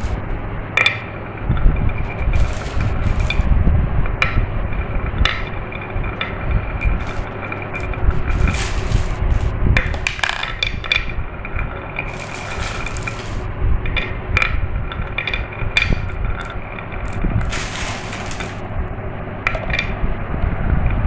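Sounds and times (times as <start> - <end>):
marbles rolling on track: 1.9 - 3.6, 5.2 - 14.1, 15.0 - 18.6
marbles clicking and clacking: 2.0 - 3.5, 6.3 - 11.1, 12.0 - 13.5, 15.2 - 18.6.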